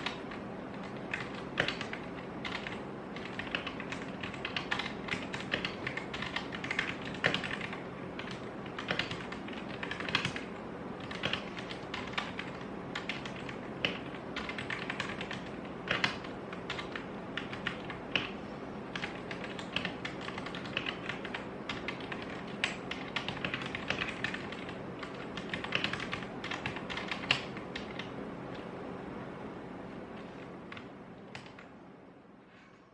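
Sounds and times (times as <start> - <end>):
mechanical keyboard typing: 0.0 - 28.1, 30.7 - 31.7.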